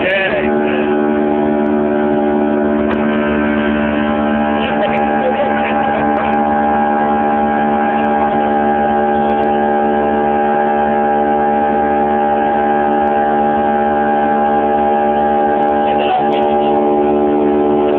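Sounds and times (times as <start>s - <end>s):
boat engine droning: 0.0s - 17.9s.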